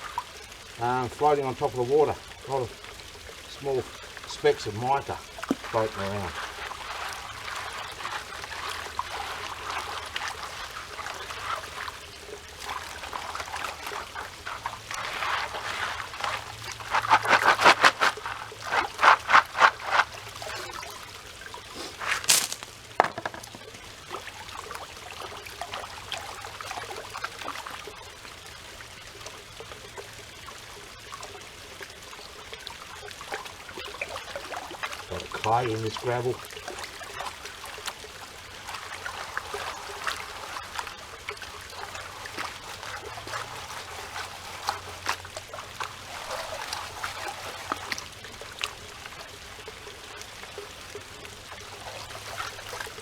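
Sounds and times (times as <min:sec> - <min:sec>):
water sloshing in a pan: 0:00.0 - 0:28.9, 0:31.2 - 0:53.0
water trickling: 0:00.0 - 0:53.0.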